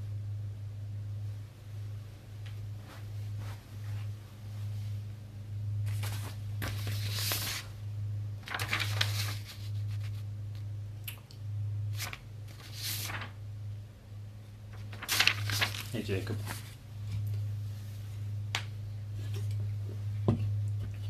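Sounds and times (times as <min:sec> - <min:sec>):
steady low hum: 0:00.0 - 0:21.0
packaging crinkling and rustling: 0:08.4 - 0:10.2, 0:12.0 - 0:13.4, 0:14.7 - 0:16.8.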